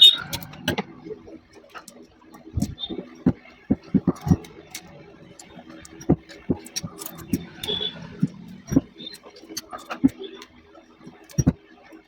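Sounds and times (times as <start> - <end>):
hand work taps and clicks: 1.8 - 10.5, 11.2 - 11.6.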